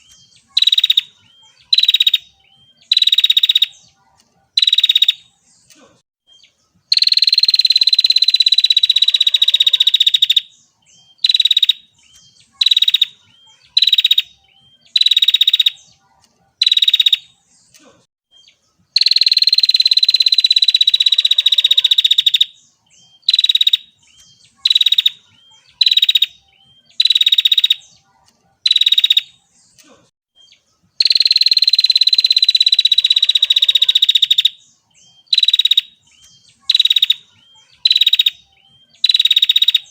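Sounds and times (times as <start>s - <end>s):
bird buzzy rattling trill: 19.0s - 22.6s, 31.0s - 34.6s.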